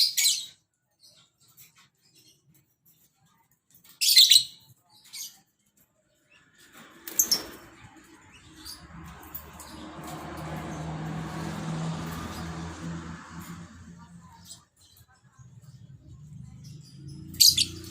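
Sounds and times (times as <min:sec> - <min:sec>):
lovebirds shrill calls: 0:16.9 - 0:17.9.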